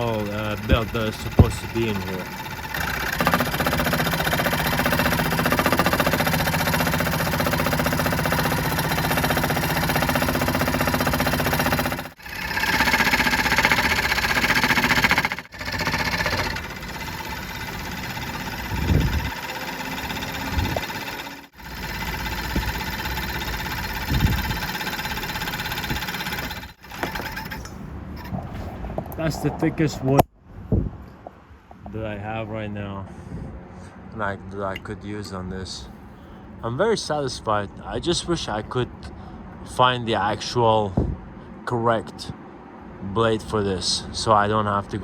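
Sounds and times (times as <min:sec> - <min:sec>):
jigsaw cutting wood: 0:00.0 - 0:27.6.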